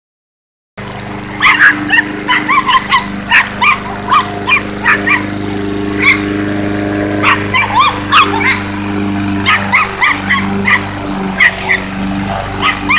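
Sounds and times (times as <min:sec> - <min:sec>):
lawnmower engine running: 0:00.8 - 0:12.9
small dog yipping: 0:01.4 - 0:05.3, 0:06.0 - 0:06.2, 0:07.2 - 0:08.6, 0:09.4 - 0:11.9, 0:12.6 - 0:12.9.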